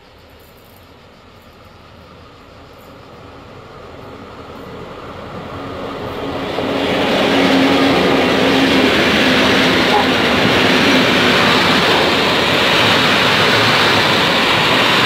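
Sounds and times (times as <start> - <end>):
diesel train approaching: 0.0 - 15.0
steady drone: 5.8 - 15.0.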